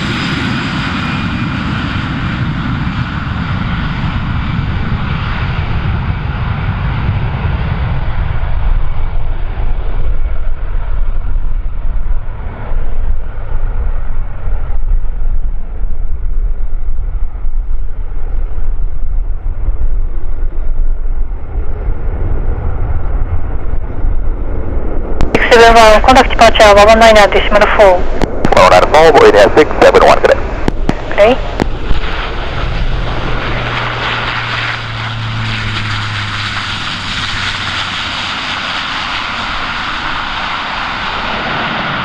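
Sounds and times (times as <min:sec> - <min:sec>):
jet engines at takeoff: 0:00.0 - 0:42.0
low uneven rumble: 0:10.9 - 0:40.3.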